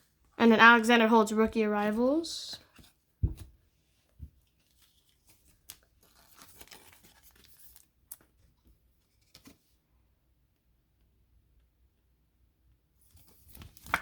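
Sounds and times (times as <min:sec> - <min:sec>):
cards and packaging rustling: 0:04.3 - 0:09.8, 0:13.1 - 0:14.0
packaging crinkling: 0:04.6 - 0:08.3.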